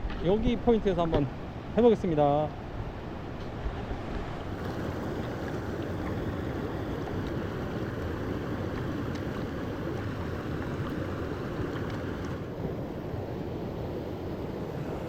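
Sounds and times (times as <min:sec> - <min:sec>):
stream running over stones: 0:03.7 - 0:15.0.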